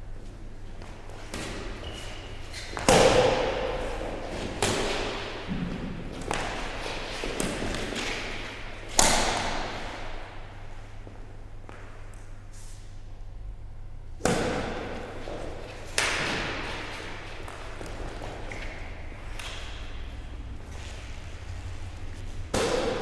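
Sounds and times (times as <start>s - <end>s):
badminton racquets hitting shuttlecock: 1.3s - 10.1s, 15.8s - 20.1s, 22.5s - 23.0s.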